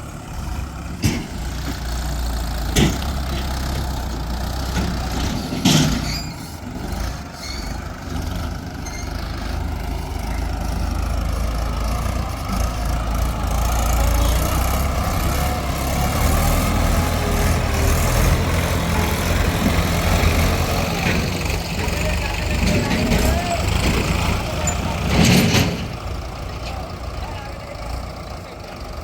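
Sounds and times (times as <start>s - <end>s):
diesel machinery engine running: 0.0s - 29.0s.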